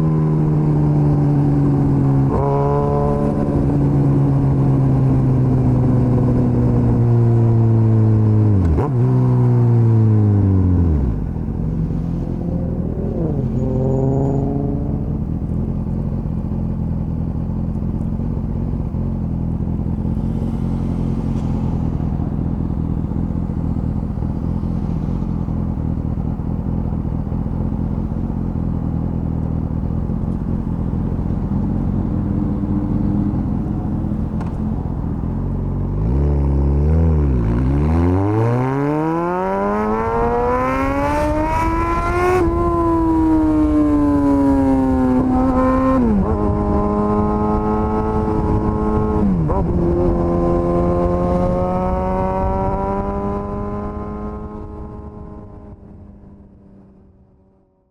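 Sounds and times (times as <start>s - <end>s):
motorcycle engine revving and idling: 0.0s - 57.9s.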